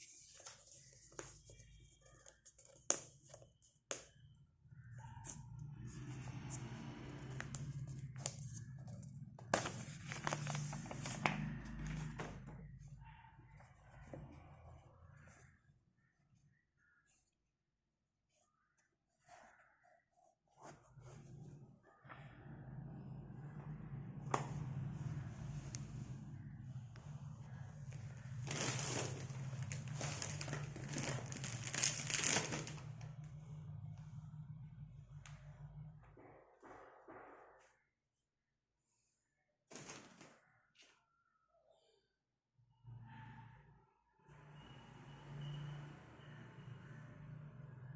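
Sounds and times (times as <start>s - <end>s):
plastic packaging crinkling: 9.6s - 11.3s, 28.4s - 32.9s.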